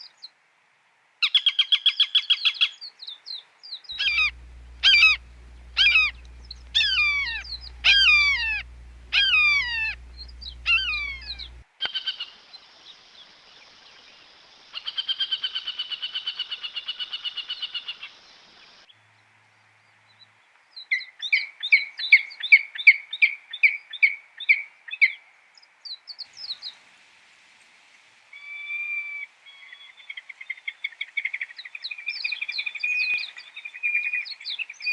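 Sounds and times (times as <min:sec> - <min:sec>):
falcon calling: 0:04.0 - 0:12.3.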